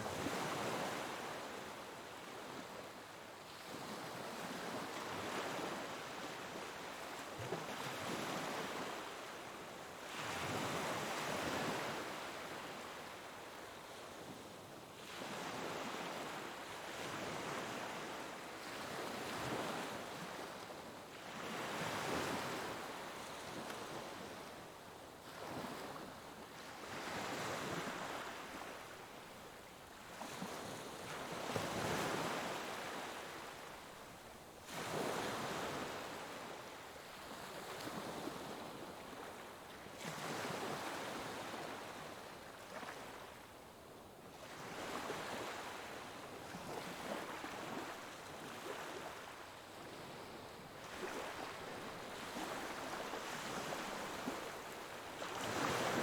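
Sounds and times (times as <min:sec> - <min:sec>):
ocean waves breaking on shore: 0:46.6 - 0:56.0.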